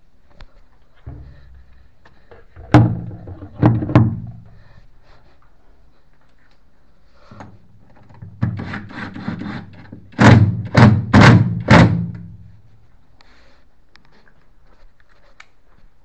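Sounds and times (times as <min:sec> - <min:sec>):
loud thuds: 0:01.0 - 0:04.6
clatter of knocks: 0:01.1 - 0:04.5, 0:10.2 - 0:12.3.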